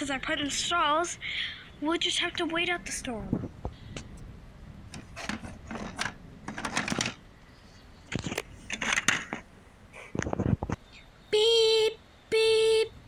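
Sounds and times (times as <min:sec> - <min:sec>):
plastic toys clicking and clattering: 0:04.9 - 0:07.2, 0:08.1 - 0:09.4.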